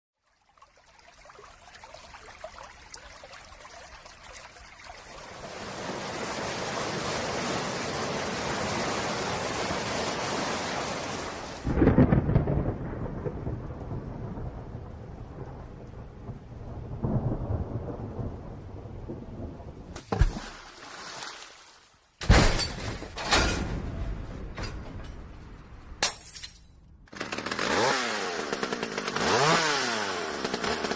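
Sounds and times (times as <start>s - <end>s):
thunderclap and rolling rumble: 11.6s - 20.0s, 23.3s - 26.0s
sharp loud cracks: 27.1s - 30.9s.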